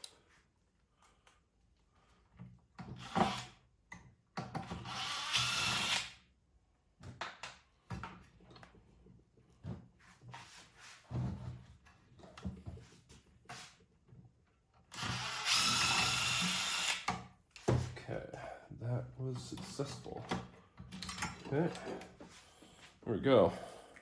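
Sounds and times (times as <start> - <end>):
cordless drill running: 4.8 - 6.1, 14.9 - 17.1
clicks and knocks of metal parts: 19.6 - 22.0.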